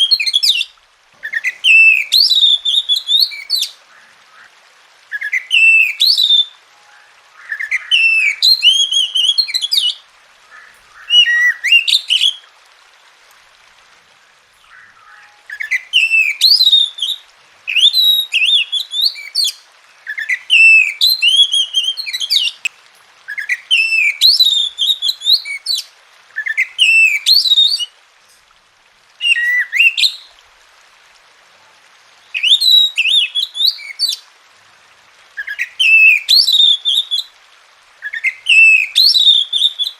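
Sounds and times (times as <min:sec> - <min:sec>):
bird singing whistles and trills: 0:00.0 - 0:03.8, 0:05.1 - 0:12.4, 0:14.6 - 0:22.7, 0:23.3 - 0:27.9, 0:29.2 - 0:30.3, 0:32.4 - 0:34.2, 0:35.4 - 0:37.3, 0:38.0 - 0:39.9.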